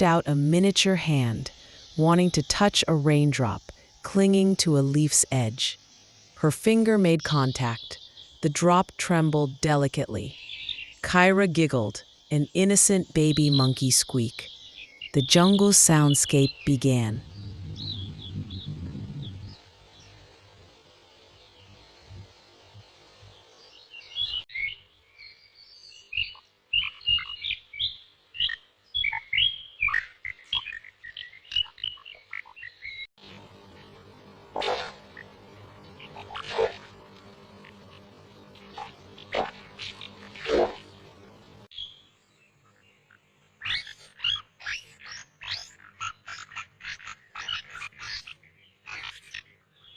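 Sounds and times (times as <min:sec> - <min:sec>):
birds chirping and calling: 0:13.3 - 0:20.2, 0:26.1 - 0:33.1, 0:34.8 - 0:41.2, 0:43.0 - 0:49.9
soft low thuds: 0:17.2 - 0:19.6.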